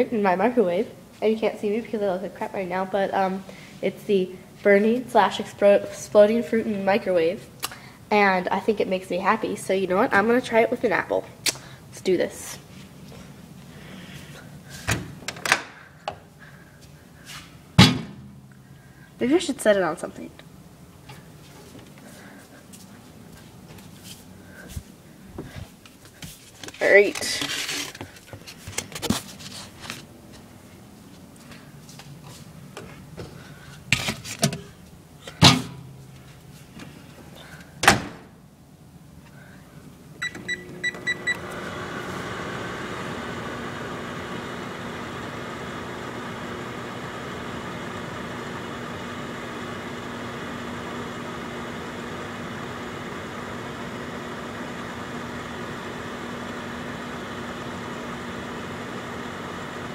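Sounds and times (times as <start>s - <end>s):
microwave oven humming: 40.1s - 59.9s
keypad beeps: 40.2s - 41.4s.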